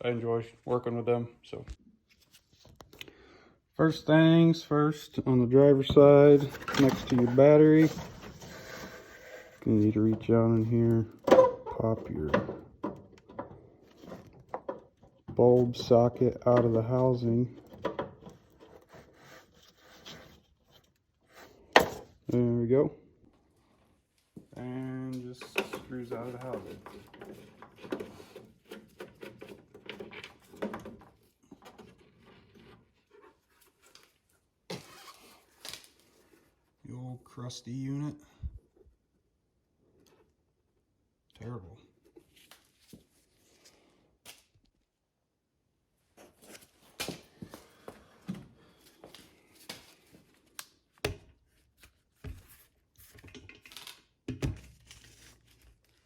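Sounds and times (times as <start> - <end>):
plastic housing scraping rustles: 6.4 - 12.3
plastic parts clicking and knocking: 11.2 - 16.8, 17.6 - 18.6.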